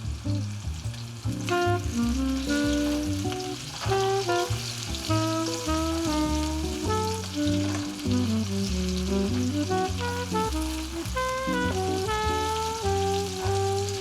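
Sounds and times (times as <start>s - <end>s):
food sizzling in a pan: 0.0s - 14.0s
background music: 1.3s - 14.0s.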